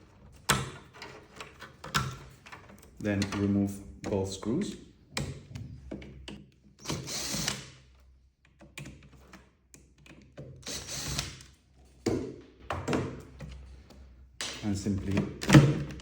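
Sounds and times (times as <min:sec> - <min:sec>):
handling clicks and knocks: 0:00.2 - 0:04.3
cordless screwdriver running: 0:06.8 - 0:07.6, 0:10.6 - 0:11.4.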